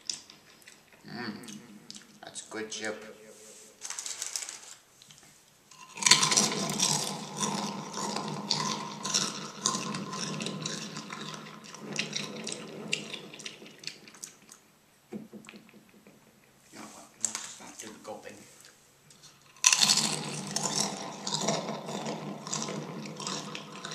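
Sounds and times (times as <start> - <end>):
chips crunching in microphone: 3.8 - 14.6, 19.1 - 23.9.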